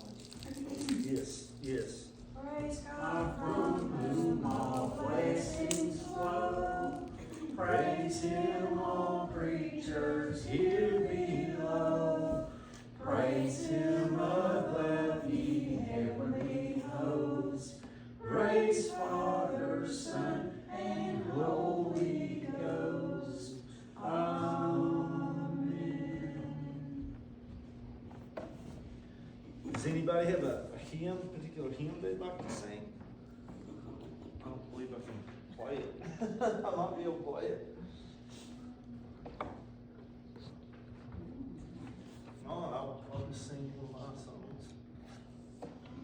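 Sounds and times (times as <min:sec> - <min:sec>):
group singing a hymn unaccompanied: 0:02.4 - 0:27.6.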